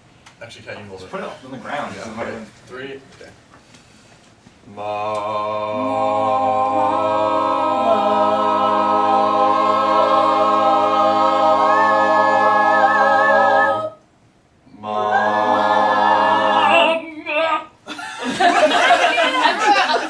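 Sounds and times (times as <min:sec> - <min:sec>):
voices singing a cappella chord: 0:04.6 - 0:20.0.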